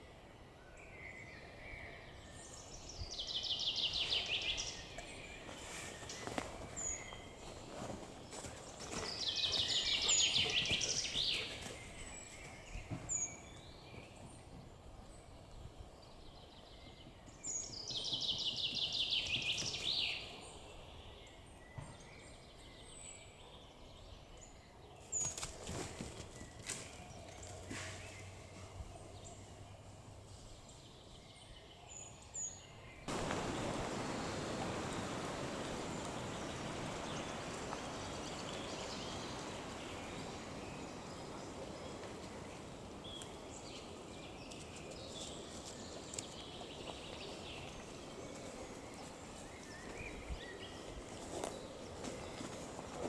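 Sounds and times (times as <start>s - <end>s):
birds chirping: 0.9s - 14.7s, 32.5s - 53.0s
steady rushing noise: 33.1s - 42.8s.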